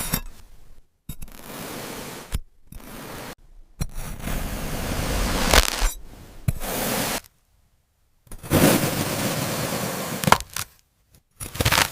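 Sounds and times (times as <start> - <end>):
kinetic sand crunching: 1.3 - 7.3.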